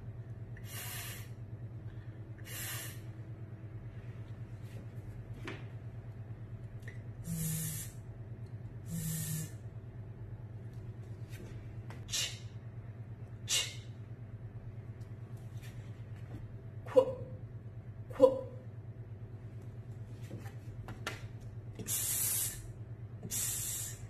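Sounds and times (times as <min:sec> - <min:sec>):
steady low hum: 0:00.0 - 0:24.0
woman saying phonics sounds: 0:16.9 - 0:17.4, 0:18.1 - 0:18.6.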